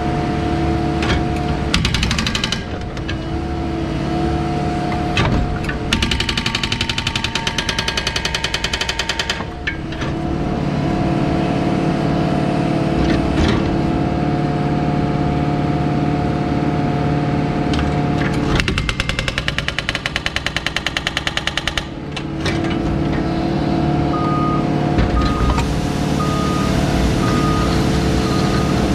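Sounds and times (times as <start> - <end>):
diesel engine running: 0.0 - 6.7, 9.6 - 18.7, 21.8 - 28.9
hydraulic breaker hammering: 1.0 - 3.3, 5.0 - 10.1, 18.3 - 23.0
reversing alarm beeping: 24.1 - 28.9.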